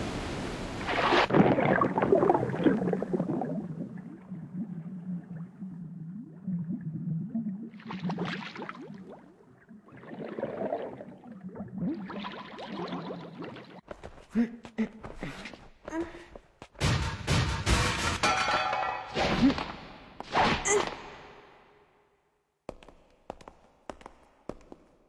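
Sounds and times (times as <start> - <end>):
water rushing: 0.0 - 3.4
bubbles gurgling: 0.8 - 13.8.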